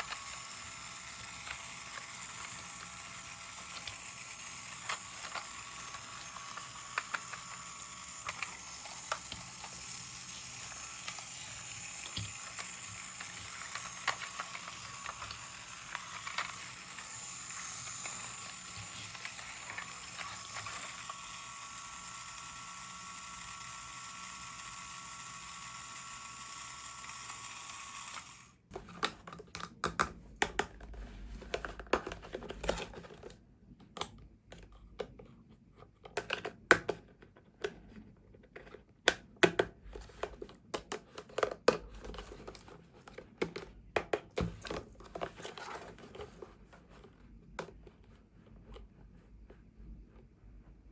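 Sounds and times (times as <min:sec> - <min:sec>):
plastic toy pieces clicking: 0:00.0 - 0:28.4.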